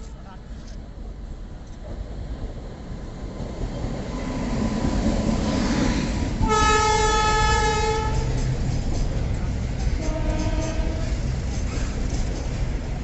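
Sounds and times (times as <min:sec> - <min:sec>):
train running noise: 0:00.0 - 0:13.0
train horn blast: 0:06.4 - 0:08.3, 0:10.0 - 0:11.2.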